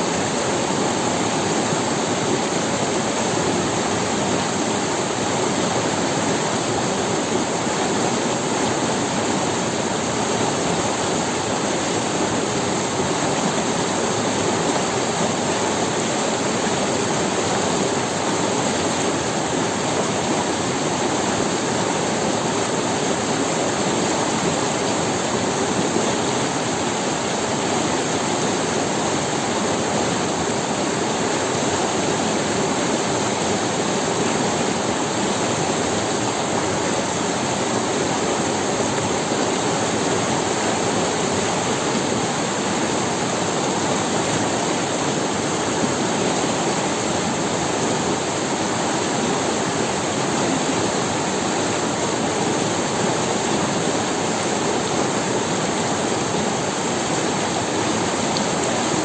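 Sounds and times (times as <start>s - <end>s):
river water rushing over stones: 0.0s - 59.0s.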